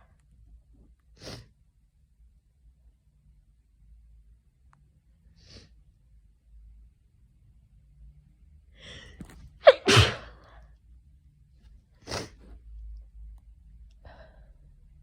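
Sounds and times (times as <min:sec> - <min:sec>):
person sneezing: 0:09.6 - 0:10.4.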